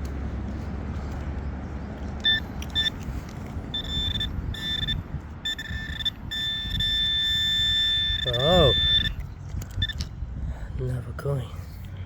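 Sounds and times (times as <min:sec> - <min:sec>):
metal detector beeping: 0:02.2 - 0:10.1.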